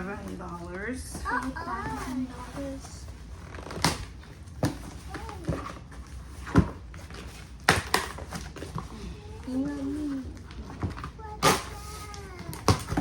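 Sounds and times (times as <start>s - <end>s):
faint packaging rustling: 0.0s - 13.0s
knocks and clicks of cardboard box: 3.8s - 5.8s.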